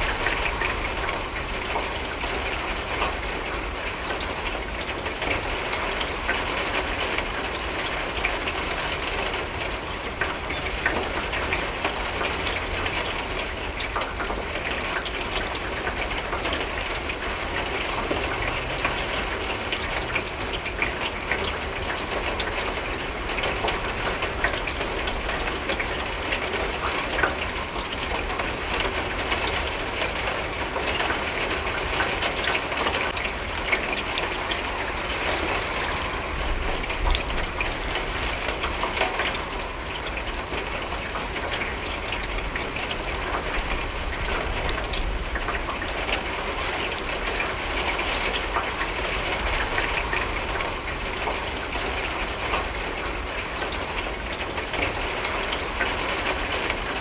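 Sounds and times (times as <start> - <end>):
rain on a window: 0.0 - 57.0.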